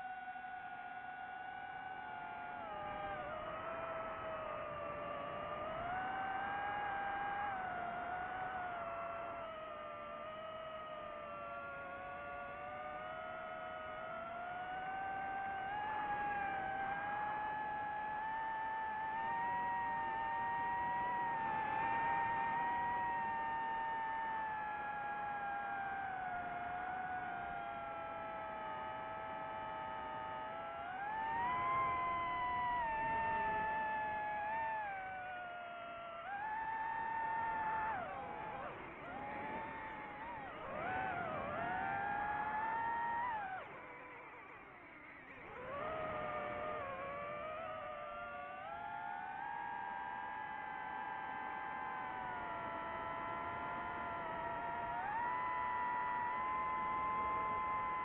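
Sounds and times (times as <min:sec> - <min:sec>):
drone propellers whining: 0:28.4 - 0:58.0.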